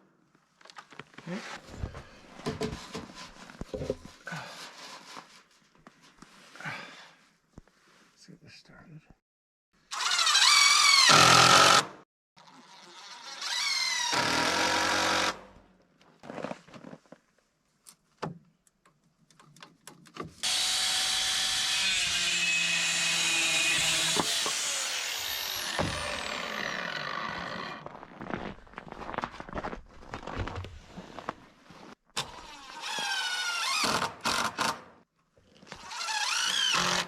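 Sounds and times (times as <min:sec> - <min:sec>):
power tool motor running: 0:20.4 - 0:27.8.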